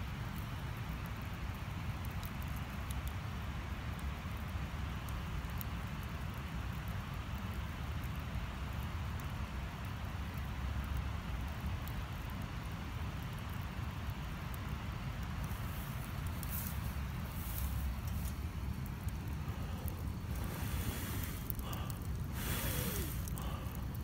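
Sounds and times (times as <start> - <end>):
campfire crackles: 0.0 - 24.0
low fire rumble: 0.0 - 24.0.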